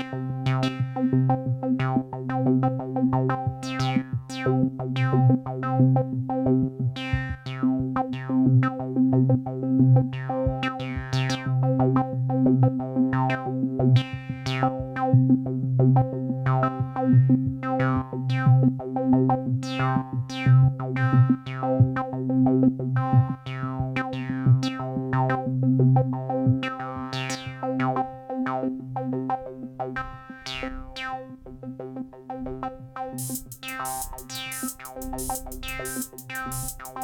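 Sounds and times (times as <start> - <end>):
electronic drum beat: 33.2 - 37.0
synth note with filter sweeps: 33.2 - 37.0.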